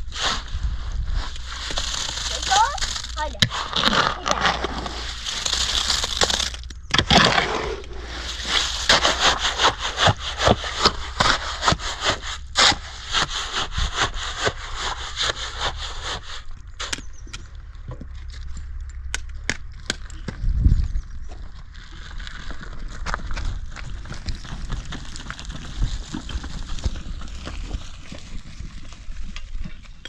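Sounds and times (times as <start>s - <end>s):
rhythmic scraping strokes: 1.4s - 6.6s, 7.3s - 16.4s.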